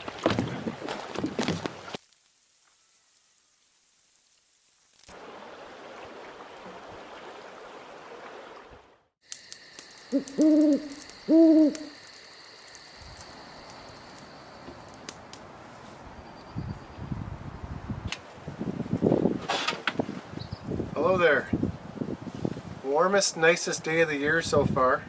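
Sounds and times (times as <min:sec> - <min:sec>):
owl hooting: 0:09.6 - 0:12.6.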